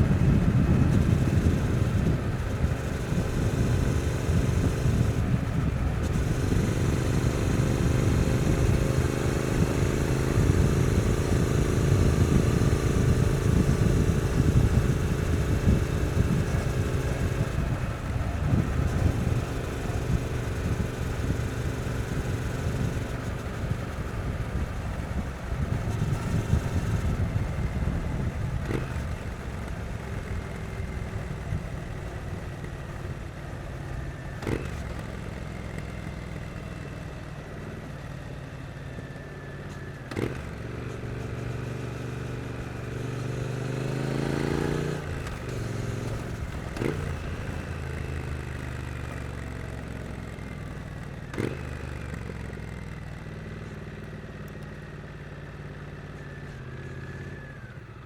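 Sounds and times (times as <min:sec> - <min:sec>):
motorcycle engine running: 0:00.0 - 0:58.0.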